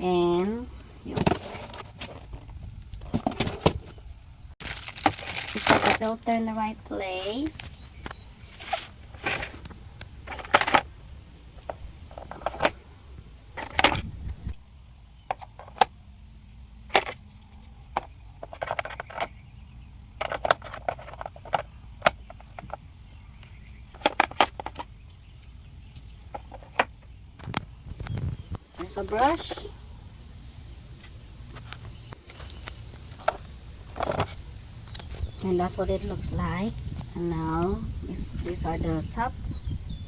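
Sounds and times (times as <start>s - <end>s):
plastic parts clicking and knocking: 8.0s - 10.9s, 11.6s - 12.9s, 13.5s - 14.5s, 15.3s - 16.0s, 16.9s - 17.2s, 17.9s - 19.4s, 20.0s - 22.8s, 23.4s - 25.0s, 26.0s - 28.2s, 31.8s - 35.1s.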